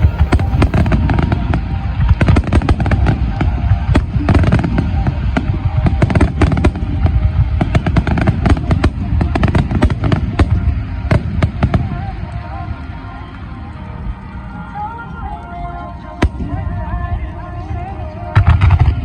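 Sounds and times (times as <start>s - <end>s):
firework bangs and crackles: 0.0s - 12.9s, 18.3s - 19.0s.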